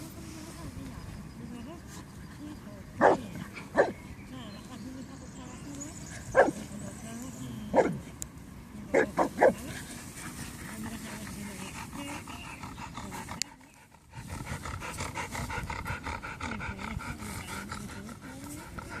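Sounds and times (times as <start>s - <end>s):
dog panting: 9.0s - 19.0s.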